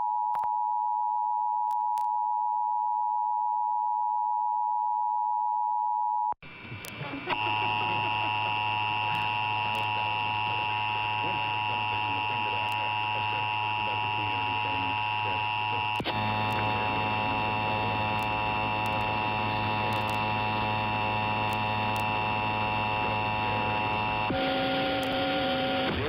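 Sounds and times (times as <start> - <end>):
steady electronic tone: 6.5 - 26.0.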